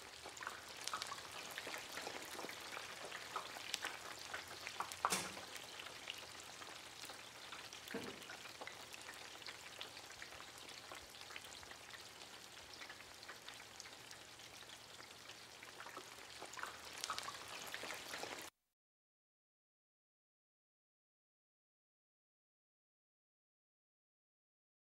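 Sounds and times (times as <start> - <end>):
food frying in hot oil: 0.0 - 18.5.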